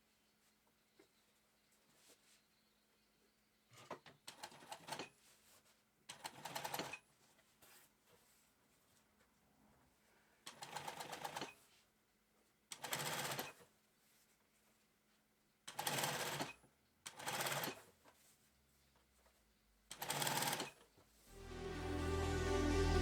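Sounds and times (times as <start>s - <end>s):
sewing machine stitching: 10.5s - 11.6s, 15.7s - 17.9s.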